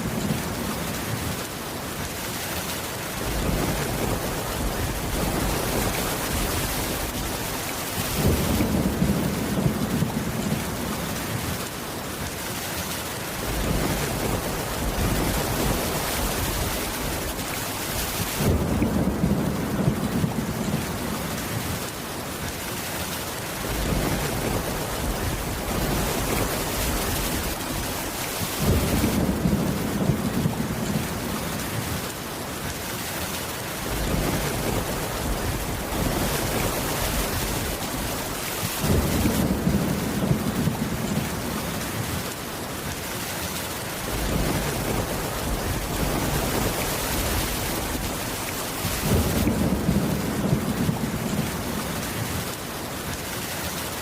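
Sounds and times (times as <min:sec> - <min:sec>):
steady rain: 0:00.0 - 0:54.0
low rumbling thunder: 0:03.2 - 0:11.6, 0:13.4 - 0:21.8, 0:23.6 - 0:32.0, 0:33.8 - 0:42.2, 0:44.1 - 0:52.4.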